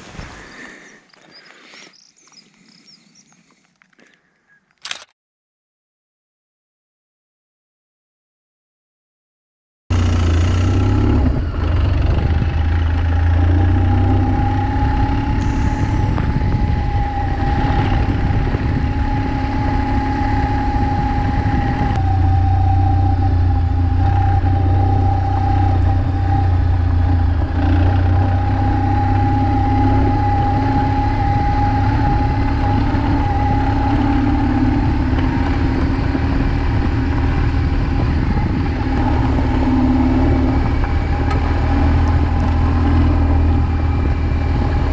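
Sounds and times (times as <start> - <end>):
motorcycle engine rumbling: 9.9 - 44.9.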